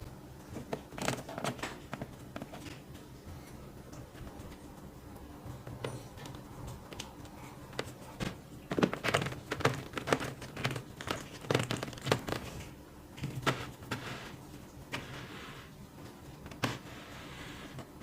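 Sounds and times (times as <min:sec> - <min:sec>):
packaging crinkling and tearing: 0:07.8 - 0:14.4.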